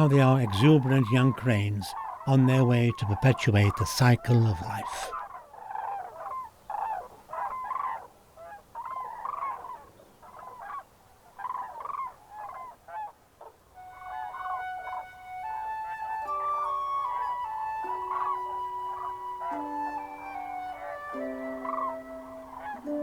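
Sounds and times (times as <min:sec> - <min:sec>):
cranes trumpeting calls: 0:00.0 - 0:23.0
soft flute-like music: 0:13.8 - 0:23.0.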